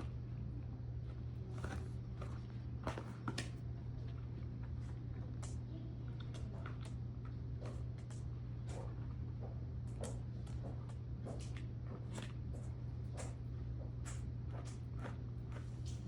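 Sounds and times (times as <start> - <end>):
dog licking rubber mat: 1.0 - 16.0.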